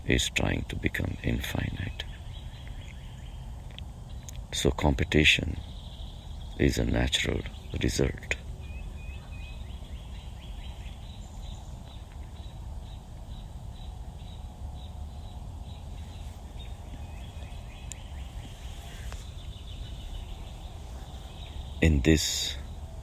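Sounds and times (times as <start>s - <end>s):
low background rumble: 0.0s - 23.0s.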